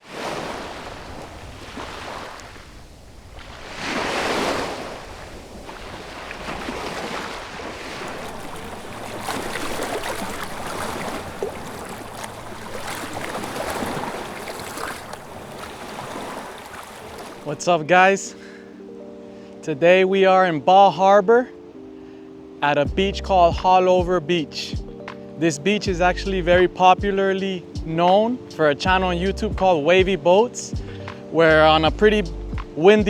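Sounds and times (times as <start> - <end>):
waves crashing on a beach: 0.0 - 20.2.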